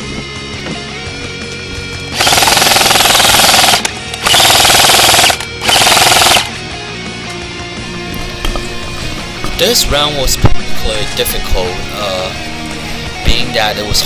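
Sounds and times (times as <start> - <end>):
background music: 0.0 - 14.0
airsoft gun automatic fire: 2.1 - 6.5.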